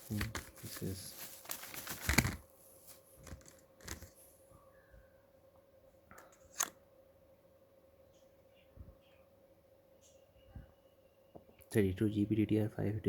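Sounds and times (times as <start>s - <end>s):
packaging crinkling and rustling: 0.0s - 4.2s.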